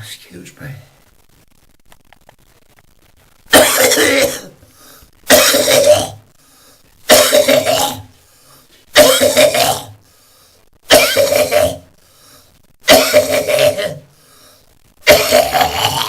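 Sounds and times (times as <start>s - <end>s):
man coughing loudly: 3.6s - 4.6s, 5.3s - 6.2s, 7.1s - 8.0s, 9.0s - 9.9s, 10.9s - 11.8s, 12.9s - 14.0s.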